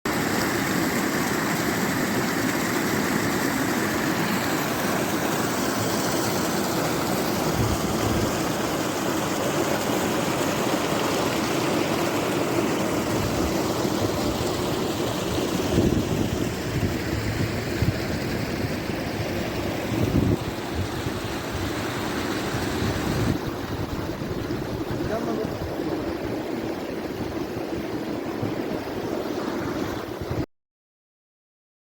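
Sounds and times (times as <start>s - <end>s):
river water rushing: 0.1s - 30.4s.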